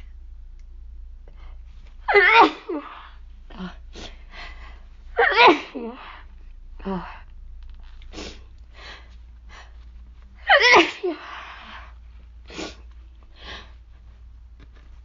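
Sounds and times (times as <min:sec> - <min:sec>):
woman sneezing: 0:05.2 - 0:06.0, 0:10.5 - 0:11.2.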